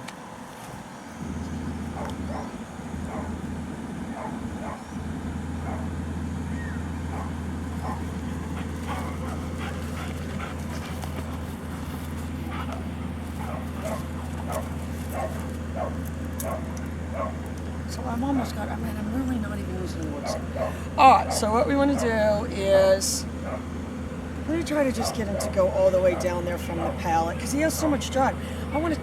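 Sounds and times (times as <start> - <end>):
low hum: 0.0 - 29.0
dog barking and yipping: 1.9 - 3.5, 4.1 - 5.0, 5.6 - 5.9, 6.6 - 17.5, 20.2 - 22.4, 23.4 - 23.8, 24.8 - 27.3
dog whining: 4.1 - 5.0.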